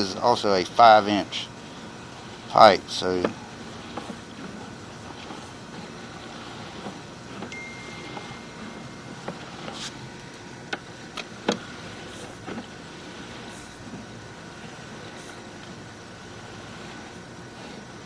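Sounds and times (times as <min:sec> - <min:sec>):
steady hum: 0:06.0 - 0:13.7
thin high tone: 0:07.5 - 0:10.7.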